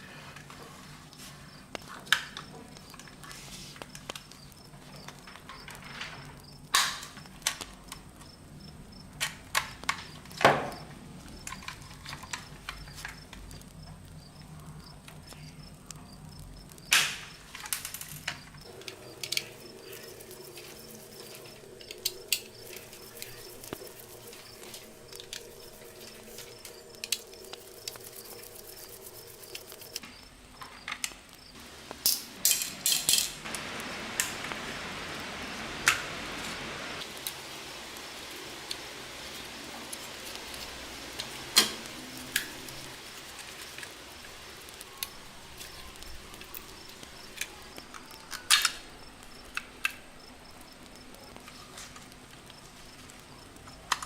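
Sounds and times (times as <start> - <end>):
steady hiss or scrubbing: 0.0 - 30.6, 31.2 - 54.0
small hard parts clinking: 32.0 - 33.5.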